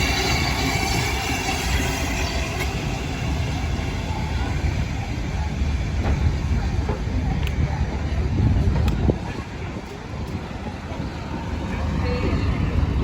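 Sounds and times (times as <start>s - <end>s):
steam hiss: 0.0s - 4.9s
steam locomotive rumble: 0.0s - 13.0s.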